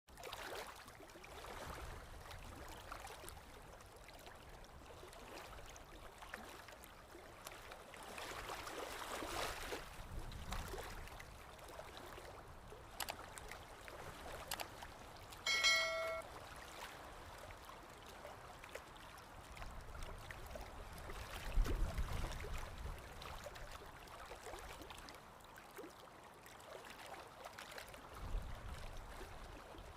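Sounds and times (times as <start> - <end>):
brief high-pitched tone: 15.5 - 16.2.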